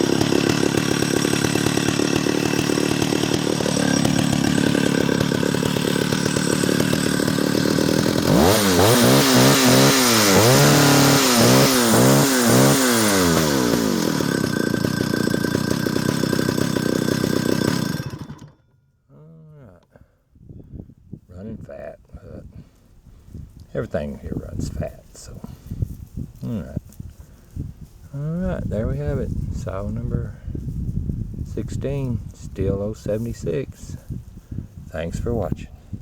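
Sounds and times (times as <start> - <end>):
chainsaw idling and revving: 0.0 - 18.8.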